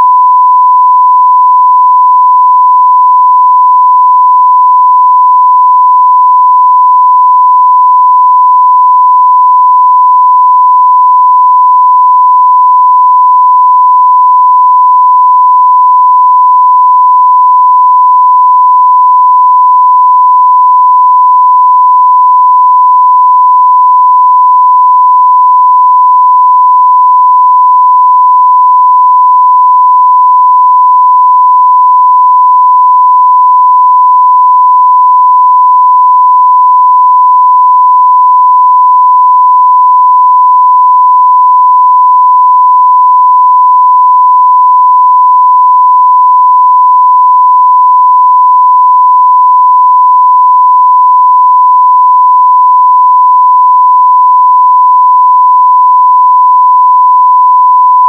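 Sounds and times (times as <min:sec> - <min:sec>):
sine wave test tone: 0:00.0 - 0:58.0.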